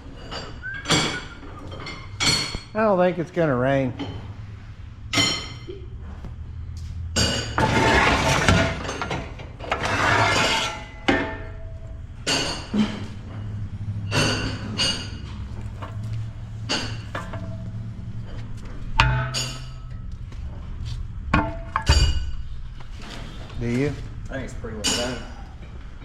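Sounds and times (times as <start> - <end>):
low engine hum: 0.0 - 9.9, 10.8 - 26.0
metallic clinks and clanks: 0.1 - 2.8, 3.9 - 20.3
scraping rushes: 3.8 - 11.6.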